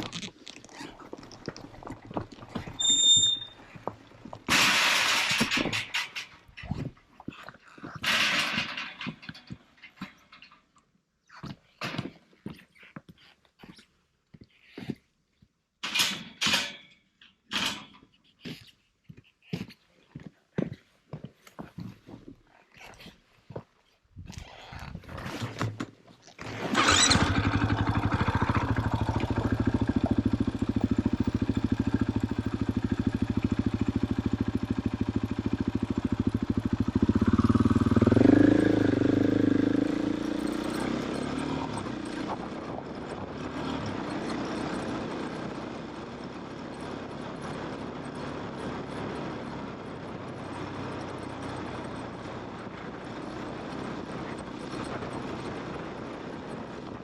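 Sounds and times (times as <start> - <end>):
motorcycle engine revving: 26.4 - 56.9.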